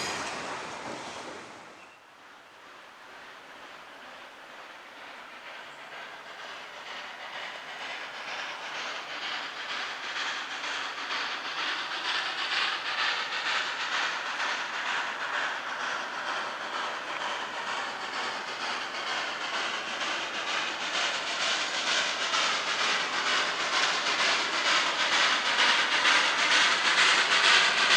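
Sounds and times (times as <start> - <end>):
train rushing with rhythmic beat: 0.0 - 27.9.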